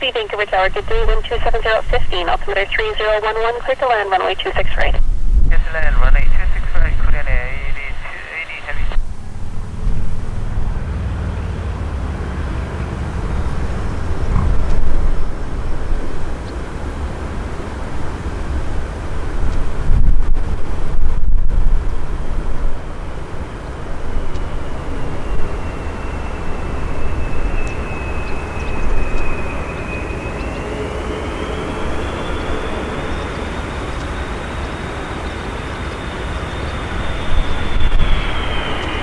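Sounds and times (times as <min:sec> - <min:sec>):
jet engines rumbling and whining: 0:00.0 - 0:39.0.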